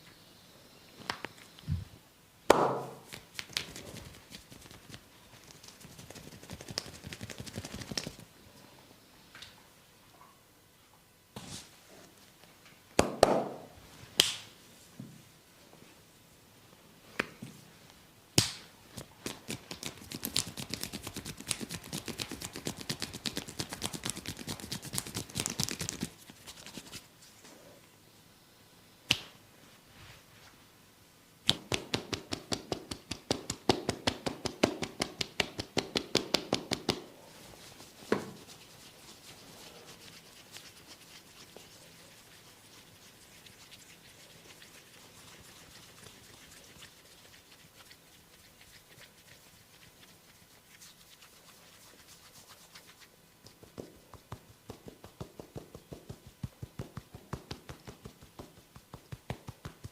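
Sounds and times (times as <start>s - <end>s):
rapid slapping and tapping on skin: 2.5s - 8.3s, 18.4s - 27.1s, 31.4s - 37.1s, 37.8s - 59.9s
sharp hand snaps on skin: 14.2s - 14.5s, 18.4s - 18.7s, 29.1s - 29.3s.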